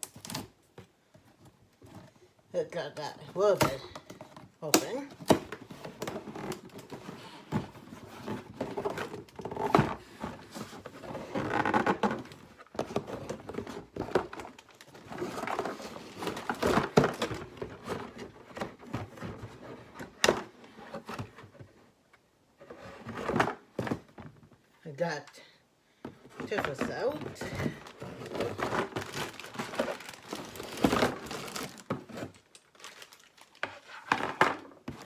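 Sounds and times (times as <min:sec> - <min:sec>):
cardboard box rustling and scraping: 0:05.2 - 0:22.0, 0:22.6 - 0:24.4, 0:26.1 - 0:35.0.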